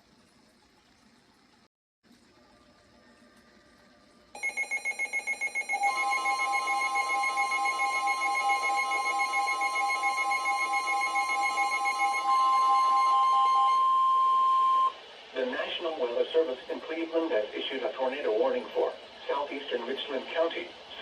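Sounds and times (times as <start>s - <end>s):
rapid electronic beeping: 4.4s - 13.2s
continuous shrill alarm: 4.4s - 15.0s
faint hiss: 12.7s - 21.0s.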